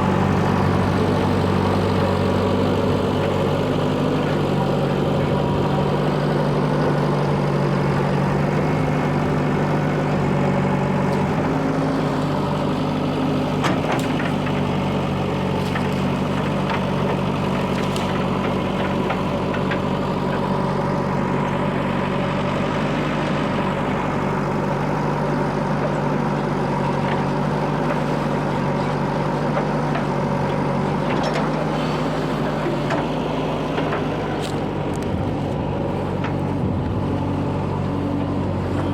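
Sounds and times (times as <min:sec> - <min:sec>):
diesel engine idling: 0:00.0 - 0:38.9
faint engine knocks: 0:12.3 - 0:21.9, 0:25.6 - 0:38.9.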